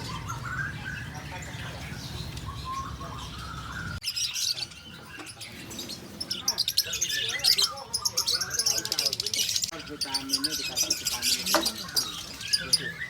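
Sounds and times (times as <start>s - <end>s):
faint voices: 0.0s - 13.0s
small birds chirping: 0.0s - 13.0s.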